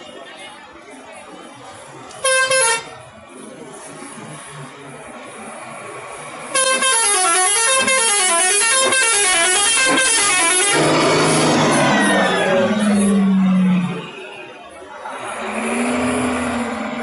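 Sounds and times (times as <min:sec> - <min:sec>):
street noise: 0:00.0 - 0:17.0
bus multi-tone horn melody: 0:02.1 - 0:03.1, 0:06.5 - 0:14.3
loud horn blast: 0:02.2 - 0:02.9, 0:06.5 - 0:12.0.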